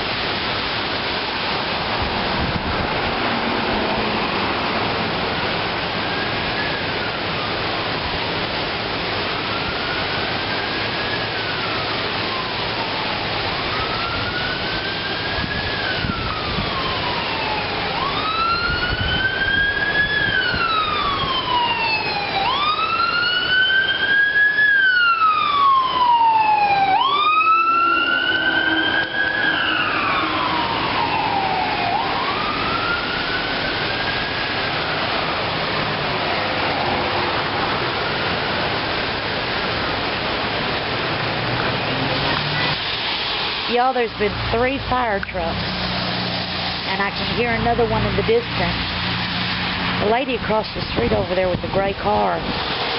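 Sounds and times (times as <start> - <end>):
rain hiss: 0.0 - 52.9
fire truck siren wailing: 0.1 - 52.9.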